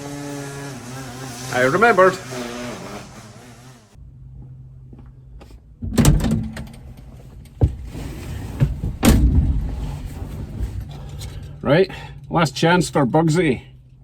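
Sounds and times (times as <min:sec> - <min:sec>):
loud clunks and knocks: 0:08.6 - 0:10.0.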